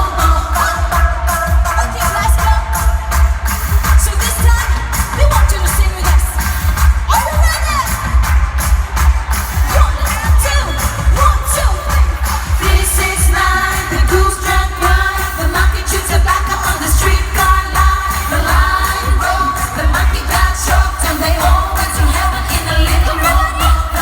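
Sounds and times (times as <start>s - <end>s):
female vocal group singing: 0.0s - 8.4s, 9.5s - 24.0s
pop backing track with pounding bass: 0.0s - 24.0s.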